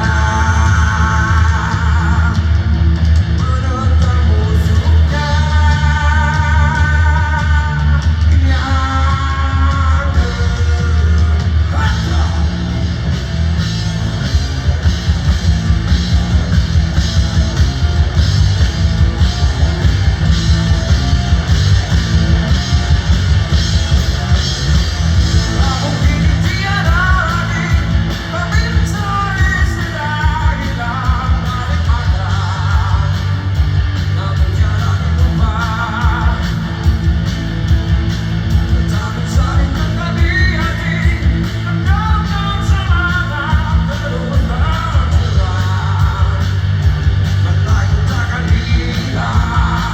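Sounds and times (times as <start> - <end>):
person singing: 0.0 - 12.8, 25.2 - 36.7, 38.6 - 49.9
fast drumbeat: 0.0 - 49.9
live rock band playing: 0.0 - 49.9.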